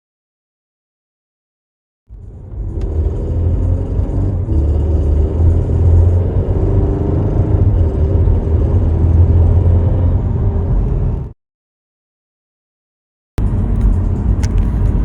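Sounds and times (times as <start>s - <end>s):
car engine rumble: 2.1s - 11.4s, 13.4s - 15.0s.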